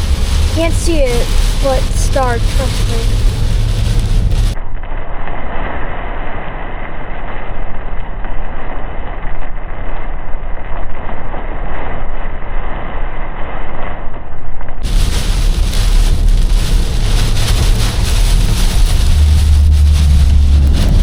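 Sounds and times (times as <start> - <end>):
car tyre and road noise: 0.0 - 4.6, 14.8 - 21.0
rain on car: 0.0 - 4.6, 14.8 - 21.0.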